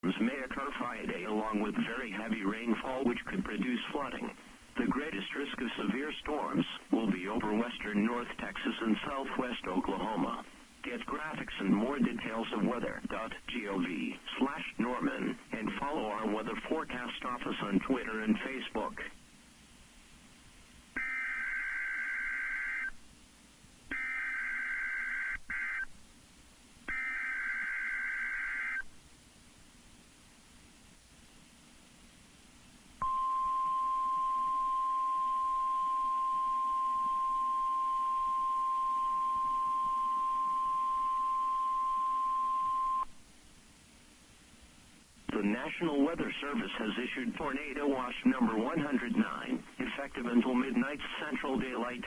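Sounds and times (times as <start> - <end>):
faint radio hiss: 0.0 - 52.0
buzzy two-tone digital data screech: 21.0 - 22.9, 23.9 - 25.9, 26.9 - 28.8
high-pitched alarm tone: 23.9 - 25.8, 33.0 - 43.1.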